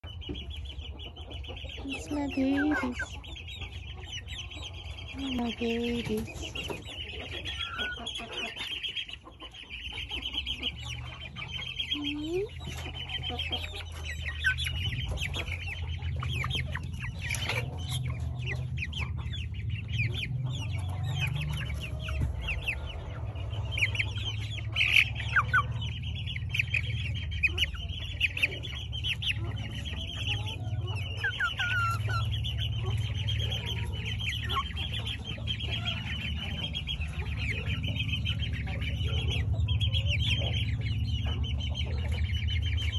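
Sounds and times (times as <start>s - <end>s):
chicks peeping: 0.0s - 42.9s
low rumble: 9.5s - 42.9s.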